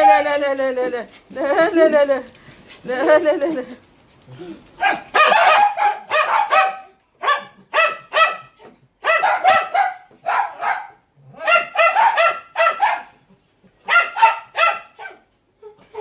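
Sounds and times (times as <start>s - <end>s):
dogs barking rapidly: 4.7s - 15.3s.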